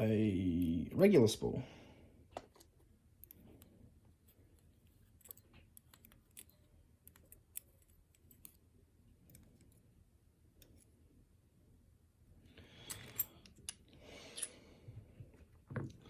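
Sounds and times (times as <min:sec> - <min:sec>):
small metal lock parts clicking: 0:05.0 - 0:09.8, 0:12.8 - 0:14.6.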